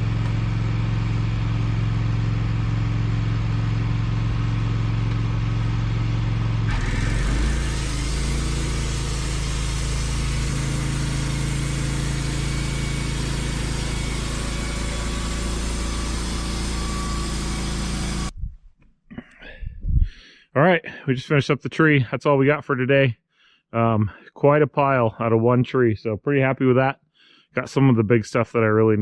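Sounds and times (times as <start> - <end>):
sawmill engine running: 0.0 - 18.4
band blade cutting log: 6.7 - 18.3.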